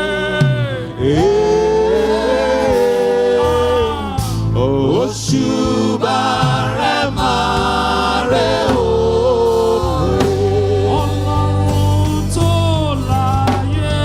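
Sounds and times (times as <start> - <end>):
choir singing: 0.0 - 12.5
bass-heavy instrumental backing: 0.0 - 14.0.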